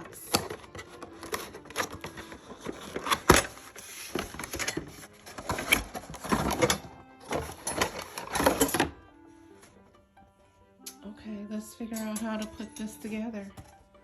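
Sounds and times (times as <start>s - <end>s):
packaging rustling: 0.0s - 9.0s.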